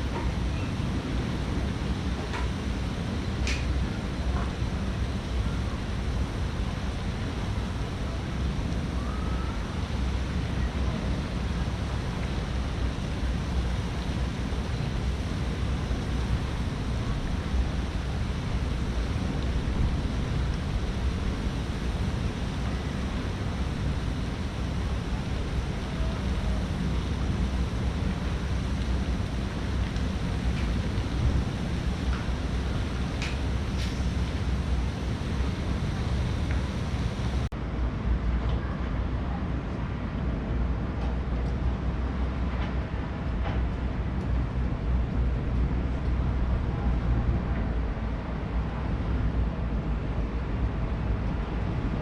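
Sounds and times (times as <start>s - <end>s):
faint hiss: 0.0s - 37.5s
low rumbling noise: 0.0s - 52.0s.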